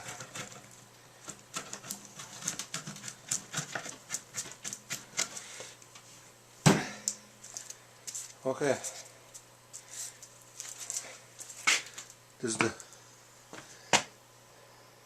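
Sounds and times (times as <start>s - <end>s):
wood scraping and clicking: 0.0s - 5.4s.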